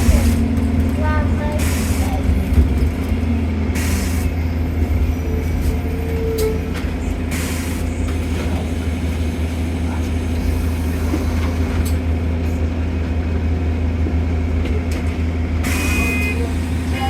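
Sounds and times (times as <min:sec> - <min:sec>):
bus engine droning: 0:00.0 - 0:17.0
road and cabin noise: 0:00.0 - 0:17.0.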